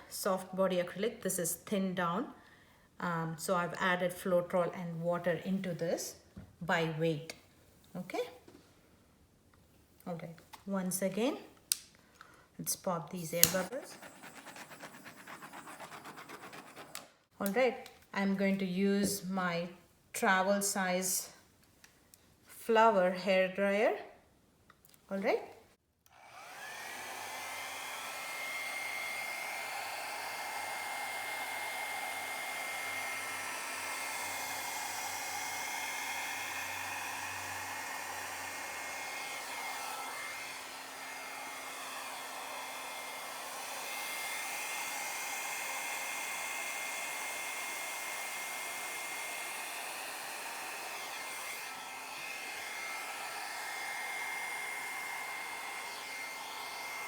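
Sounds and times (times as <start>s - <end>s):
hair dryer blowing air: 13.2s - 17.3s, 26.1s - 57.0s.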